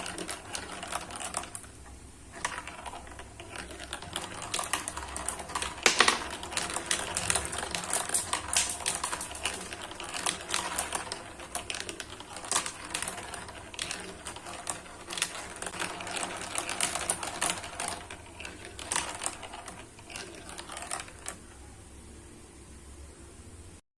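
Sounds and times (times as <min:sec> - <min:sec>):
marbles clacking down a track: 0:02.4 - 0:21.4.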